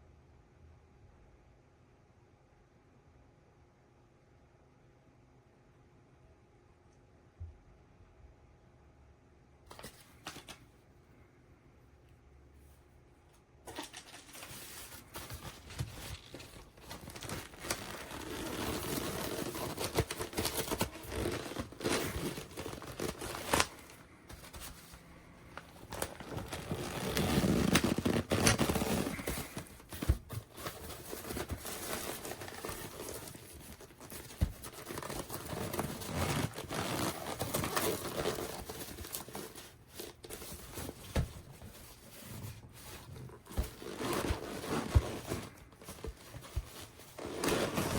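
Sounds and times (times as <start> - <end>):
plastic packaging crinkling: 13.7 - 47.9.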